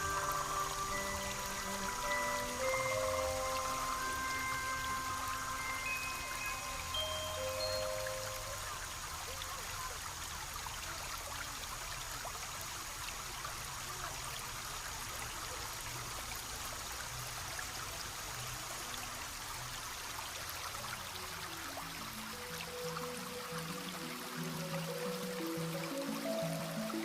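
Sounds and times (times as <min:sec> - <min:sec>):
stream babbling over stones: 0:00.0 - 0:27.0.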